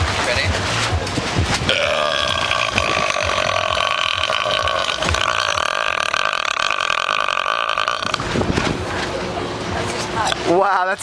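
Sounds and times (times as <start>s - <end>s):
man burping: 1.7s - 8.3s.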